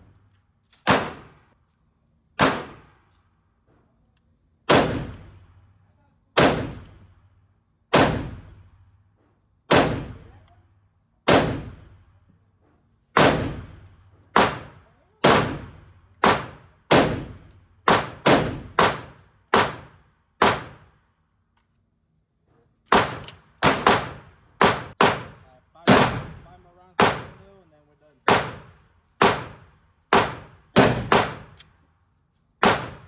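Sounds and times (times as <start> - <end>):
pistol shots with echo: 0.8 - 1.4, 2.4 - 3.0, 4.7 - 5.4, 6.4 - 7.0, 7.9 - 8.6, 9.7 - 10.3, 11.3 - 11.9, 13.2 - 20.9, 22.9 - 27.4, 28.3 - 31.6, 32.6 - 33.0.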